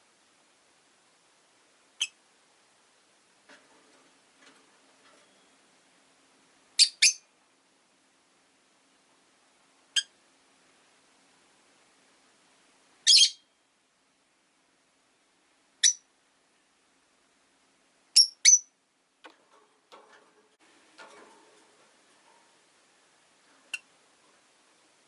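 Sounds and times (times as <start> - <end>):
lovebirds chirping: 6.8 - 7.3, 15.8 - 16.0, 18.2 - 18.7.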